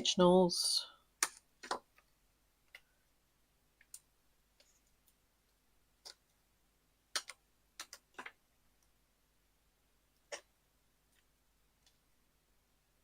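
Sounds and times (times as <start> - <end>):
paper pieces clicking and tapping: 1.2 - 2.1, 7.1 - 8.4.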